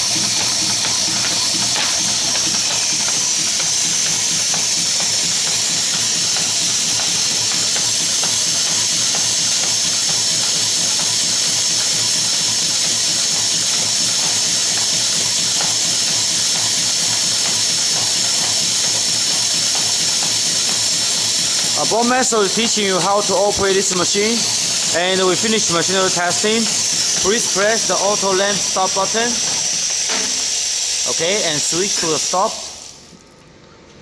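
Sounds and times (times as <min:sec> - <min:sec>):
compressed air hissing: 0:00.0 - 0:33.0
fast light machine clicking: 0:00.0 - 0:33.2.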